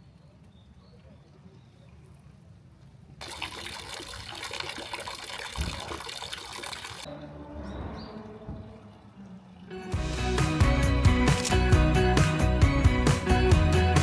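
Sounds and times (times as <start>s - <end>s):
water running and splashing: 3.2s - 7.1s.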